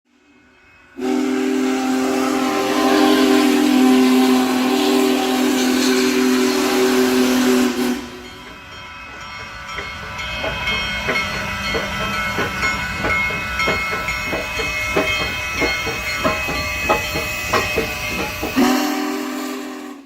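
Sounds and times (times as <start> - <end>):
train rumble and hum: 0.1 - 20.0
train horn: 1.0 - 8.5, 18.5 - 20.0.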